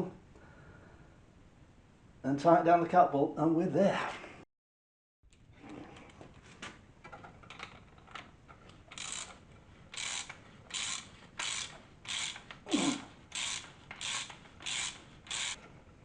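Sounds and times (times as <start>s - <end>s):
socket ratchet strokes: 8.9s - 12.6s, 13.3s - 15.6s.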